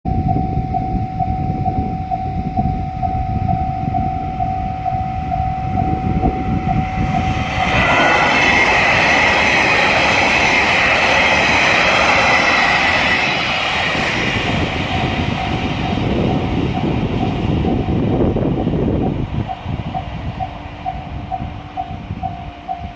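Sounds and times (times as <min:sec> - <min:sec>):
level crossing warning bell ringing: 0:00.1 - 0:08.4, 0:14.4 - 0:18.1, 0:19.5 - 0:22.9
low rumble: 0:00.1 - 0:22.9
train wheels rushing on rails: 0:04.4 - 0:22.9.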